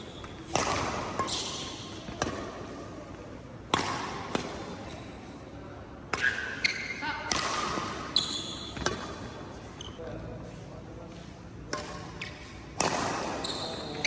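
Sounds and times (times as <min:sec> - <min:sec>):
racket hitting shuttlecock: 0:00.1 - 0:03.0, 0:03.6 - 0:05.2, 0:06.1 - 0:09.4, 0:11.7 - 0:14.0.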